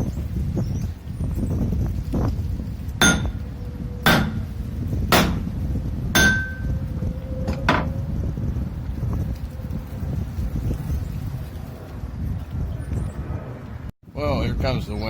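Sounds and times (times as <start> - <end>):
low wind rumble on microphone: 0.0 - 15.0
hammer blows on metal: 3.0 - 5.5, 6.1 - 6.8.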